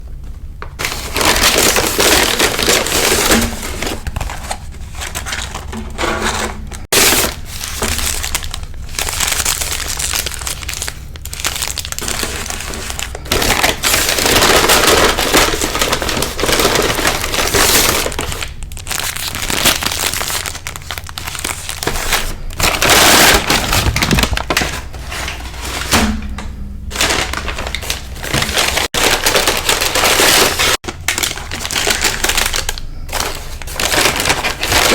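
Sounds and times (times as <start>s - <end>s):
crunching and chewing fried food: 6.8s - 25.0s, 27.0s - 34.9s.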